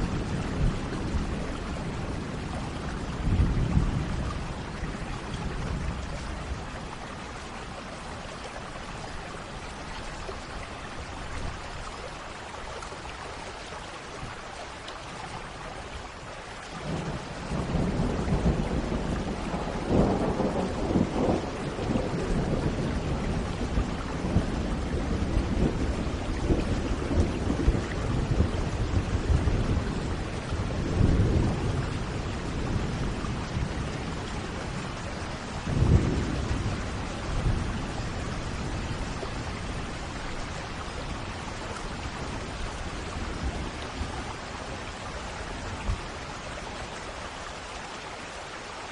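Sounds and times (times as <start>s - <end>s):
steady rain falling: 0.0s - 48.9s
thunder rumbling: 16.8s - 45.0s.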